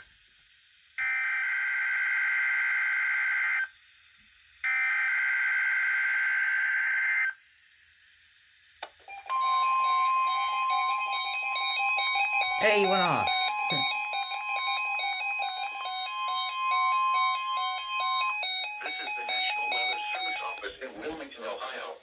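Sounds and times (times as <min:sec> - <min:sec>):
radio alert tone: 0:12.6 - 0:13.9.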